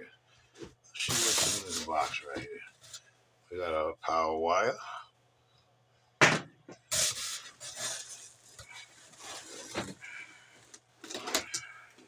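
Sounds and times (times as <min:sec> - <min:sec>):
packaging scraping in cardboard box: 0:01.1 - 0:02.2, 0:06.9 - 0:11.5.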